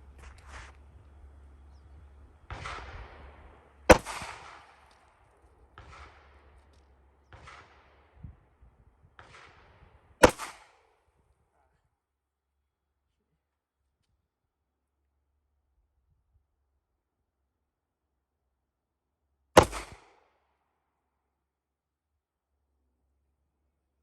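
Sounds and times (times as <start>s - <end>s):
handgun shots: 2.5s - 7.9s, 10.2s - 10.8s, 19.6s - 20.1s.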